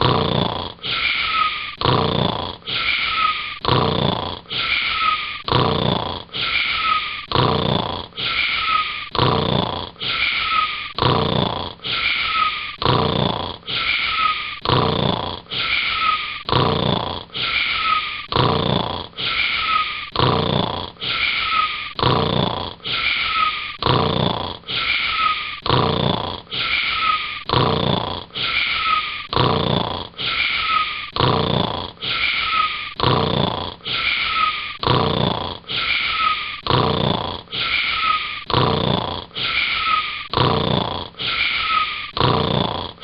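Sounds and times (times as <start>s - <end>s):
cartoon snoring: 0.0s - 43.0s.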